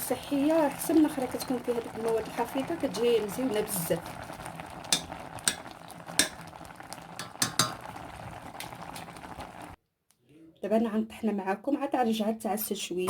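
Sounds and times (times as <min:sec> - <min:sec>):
jam bubbling in a pot: 0:00.0 - 0:09.8.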